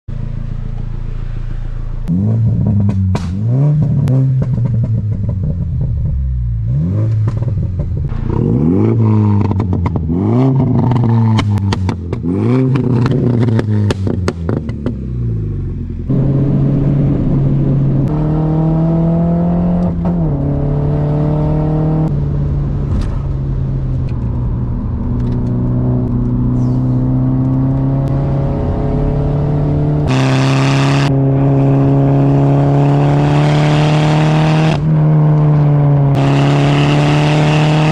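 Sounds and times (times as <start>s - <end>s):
car engine revving: 0.1s - 37.9s
exhaust pops and crackles: 7.1s - 8.4s, 9.4s - 15.0s.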